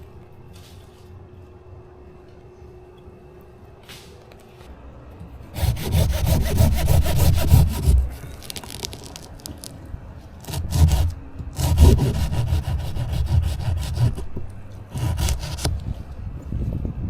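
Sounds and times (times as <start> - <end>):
saw cutting through wood: 5.6 - 8.9, 10.4 - 15.8.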